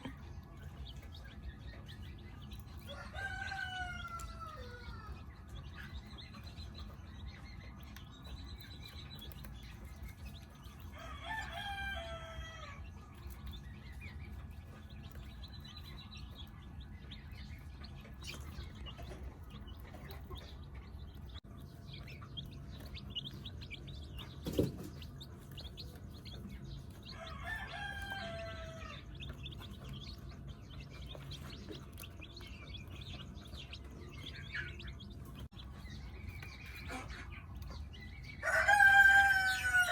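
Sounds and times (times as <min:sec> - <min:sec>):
chicks peeping: 0:00.0 - 0:39.9
rooster crowing: 0:02.9 - 0:05.2, 0:10.9 - 0:12.8, 0:27.1 - 0:29.0, 0:38.4 - 0:39.9.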